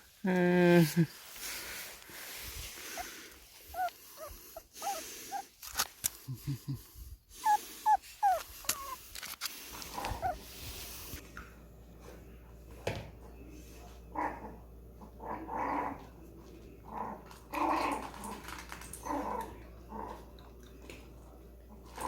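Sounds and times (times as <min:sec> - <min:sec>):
dog grunting: 0:02.8 - 0:05.5, 0:07.4 - 0:09.0, 0:09.8 - 0:10.6
dog whimpering: 0:03.0 - 0:05.6, 0:07.4 - 0:09.0, 0:09.9 - 0:10.6.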